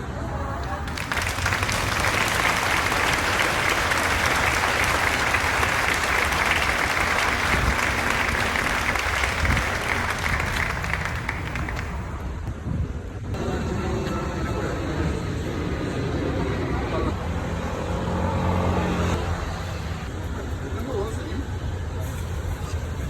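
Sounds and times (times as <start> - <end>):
crowd applauding: 0.7 - 12.3.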